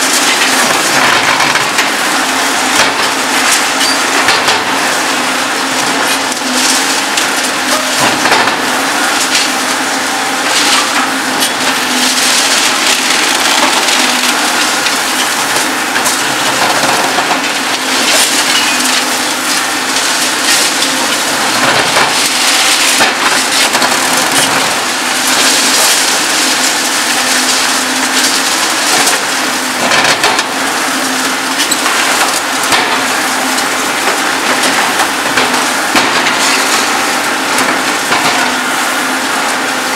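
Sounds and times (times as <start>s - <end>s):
machine hum: 0.0s - 39.9s
concrete cracking and crumbling: 10.5s - 30.6s, 31.2s - 38.8s.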